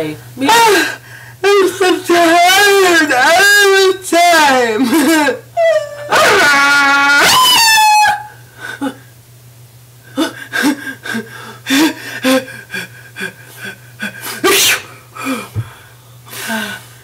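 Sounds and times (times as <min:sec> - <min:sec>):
person gasping breaths: 0:00.9 - 0:01.4, 0:10.1 - 0:17.0
person sneezing loudly: 0:14.0 - 0:15.7.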